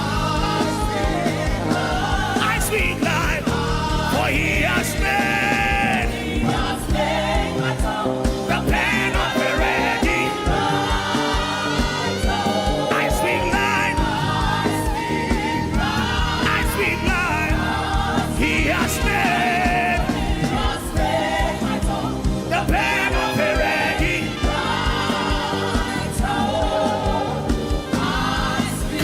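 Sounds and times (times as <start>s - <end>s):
choir singing gospel music: 0.0s - 29.0s.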